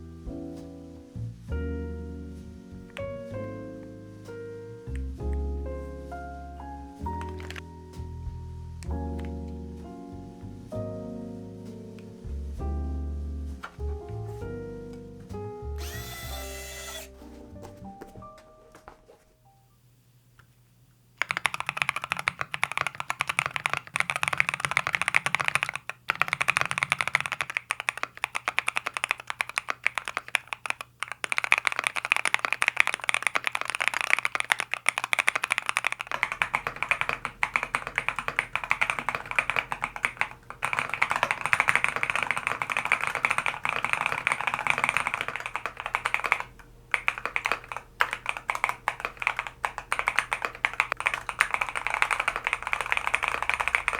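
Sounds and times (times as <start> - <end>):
mechanical keyboard typing: 7.1 - 7.7, 15.8 - 17.1, 21.2 - 53.9.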